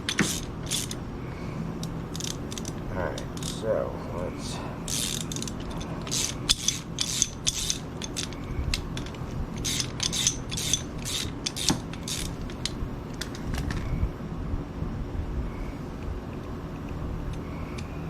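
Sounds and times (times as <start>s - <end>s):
ratchet wrench clicking: 0.0s - 1.0s, 1.8s - 3.6s, 4.9s - 13.4s
steady low hum: 0.0s - 18.0s.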